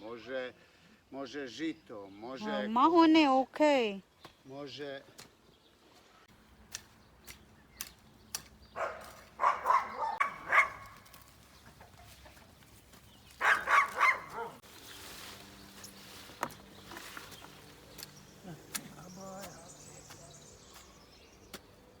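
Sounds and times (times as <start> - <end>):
chickens clucking: 9.4 - 14.6.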